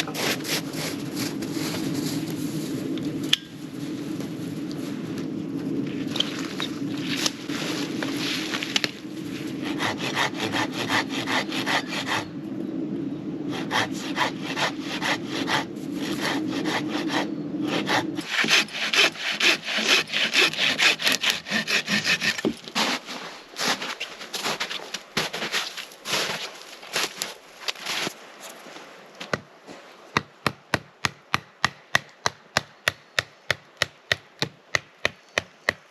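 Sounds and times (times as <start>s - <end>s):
hand saw cutting wood: 0.0s - 1.0s, 9.6s - 12.3s, 13.5s - 24.0s.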